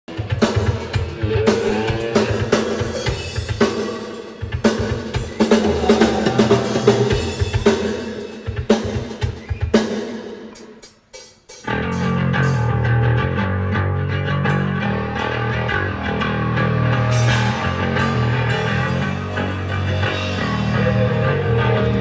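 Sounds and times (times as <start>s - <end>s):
rock drum kit playing: 0.1s - 22.0s.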